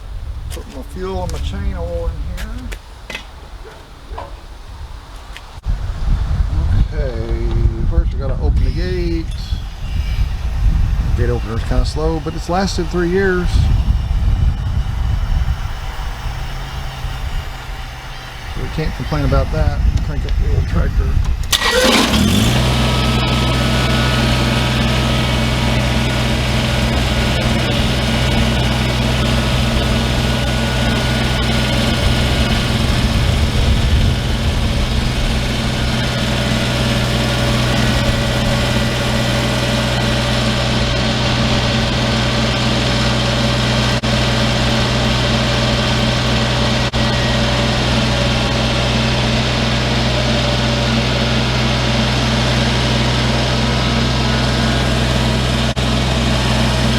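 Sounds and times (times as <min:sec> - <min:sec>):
tractor engine running: 0:00.1 - 0:56.9.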